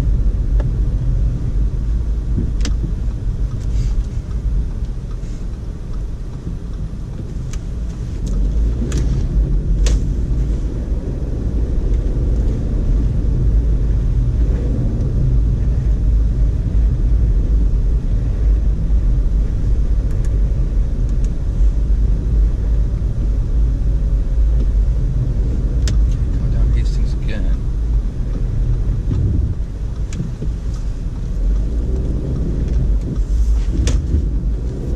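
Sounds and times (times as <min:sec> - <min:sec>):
car driving through snow: 0:00.0 - 0:34.9.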